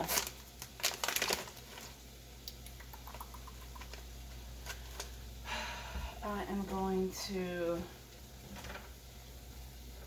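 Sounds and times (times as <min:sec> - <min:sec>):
crinkling rustle: 0:00.0 - 0:02.0
low steady hum: 0:00.0 - 0:10.0.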